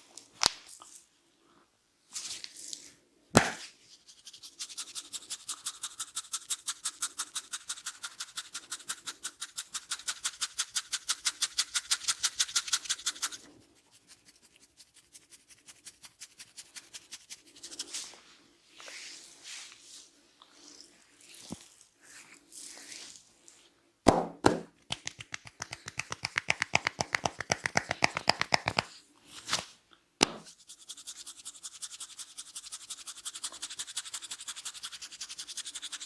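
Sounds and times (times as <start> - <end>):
sharp crack: 3.4 - 3.6
hands scratching over hair: 3.4 - 20.0, 24.9 - 29.7.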